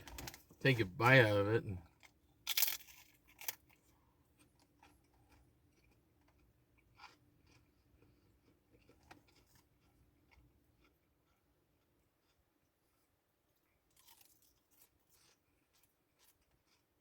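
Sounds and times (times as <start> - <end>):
chewing crackles: 1.9 - 12.4, 13.9 - 17.0
crunch of biting potato chip: 2.0 - 8.1, 13.9 - 17.0.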